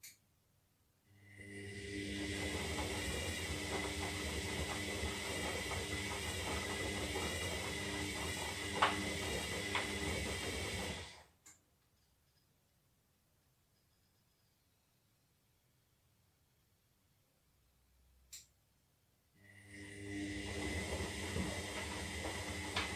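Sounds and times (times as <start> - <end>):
washing machine motor whine: 1.2 - 11.3, 19.4 - 22.9.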